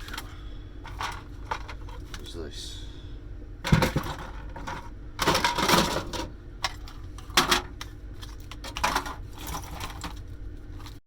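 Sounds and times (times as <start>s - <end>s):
plastic and metal parts rattling: 0.0s - 2.2s, 3.7s - 10.2s.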